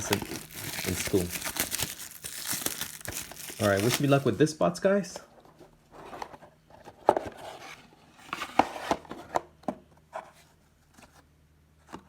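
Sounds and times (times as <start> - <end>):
cardboard and wrapper rustling: 0.0 - 4.5.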